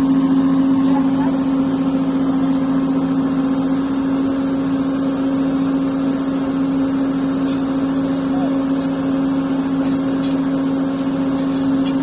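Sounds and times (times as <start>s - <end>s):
heavy machine engine humming: 0.0s - 12.0s.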